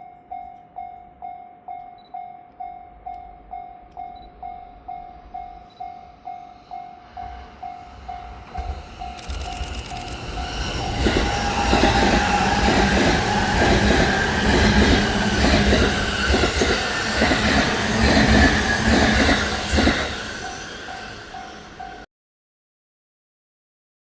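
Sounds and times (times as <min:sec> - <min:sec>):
train running hum: 0:00.1 - 0:22.0
train wheels clattering over joints: 0:08.5 - 0:22.0
level crossing warning bell: 0:19.2 - 0:22.1.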